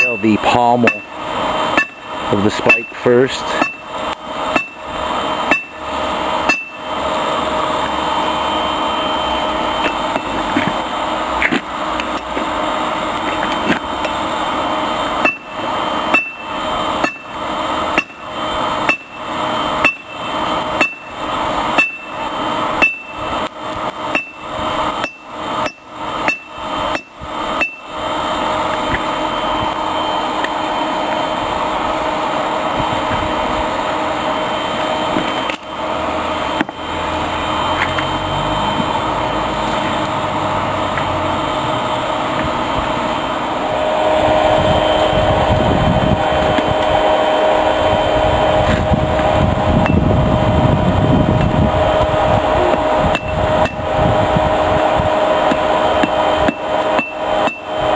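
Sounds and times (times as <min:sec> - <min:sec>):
hammer striking metal on anvil: 0:00.0 - 0:01.2, 0:01.8 - 0:03.9, 0:04.5 - 0:05.8, 0:06.4 - 0:06.8, 0:15.2 - 0:17.4, 0:18.0 - 0:21.2, 0:21.8 - 0:22.2, 0:22.8 - 0:23.2, 0:24.1 - 0:24.4, 0:25.0 - 0:27.9, 0:53.1 - 0:53.8, 0:55.5 - 0:57.7
rush of air from blower: 0:00.0 - 0:57.9.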